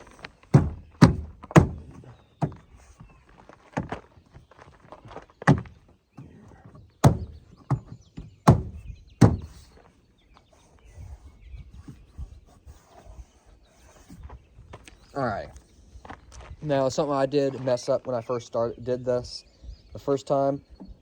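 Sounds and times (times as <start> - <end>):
sharp thumps: 0.0 - 2.8, 5.4 - 9.7
handling noise: 0.0 - 9.8.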